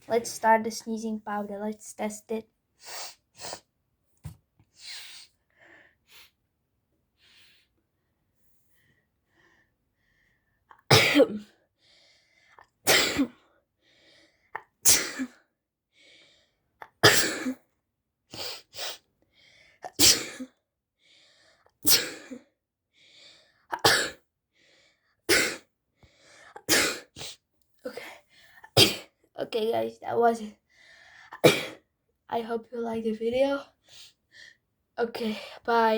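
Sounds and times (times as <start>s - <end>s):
person sneezing: 14.8s - 15.4s, 19.9s - 20.5s, 21.8s - 22.4s.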